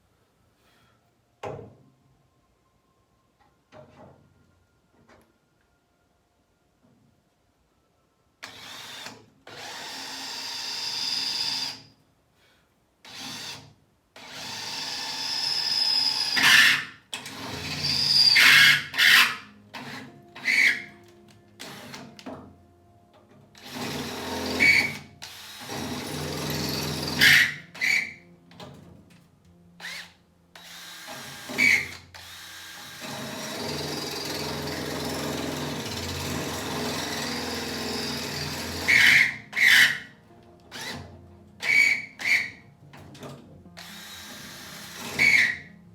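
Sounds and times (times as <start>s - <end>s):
power drill boring: 8.4s - 11.8s, 13.1s - 20.9s, 21.6s - 22.1s, 23.6s - 28.2s, 29.8s - 40.1s, 40.7s - 42.6s, 43.8s - 45.7s.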